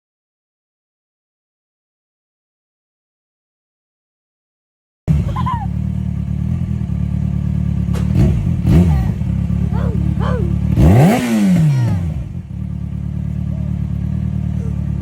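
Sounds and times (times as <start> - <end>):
engine idling and revving: 5.1 - 15.0.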